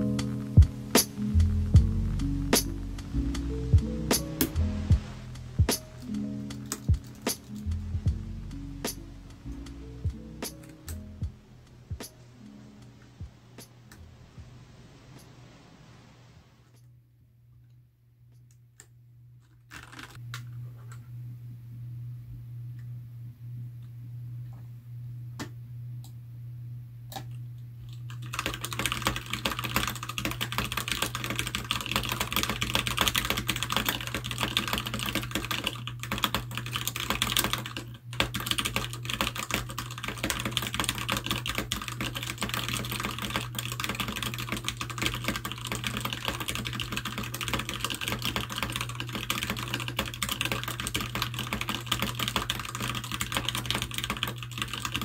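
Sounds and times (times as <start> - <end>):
steady low hum: 0.0 - 55.0
mechanical keyboard typing: 6.5 - 7.7, 19.7 - 20.2, 27.9 - 55.0.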